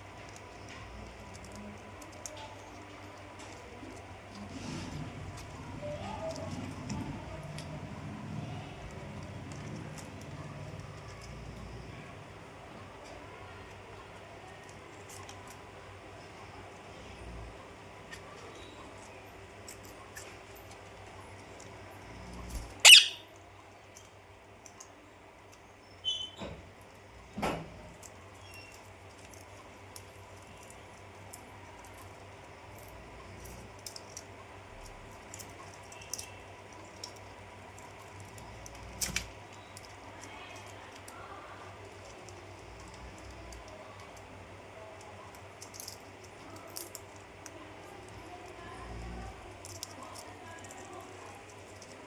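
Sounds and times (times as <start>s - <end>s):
faint room noise: 0.0s - 52.0s
parrot squawking: 22.8s - 23.3s.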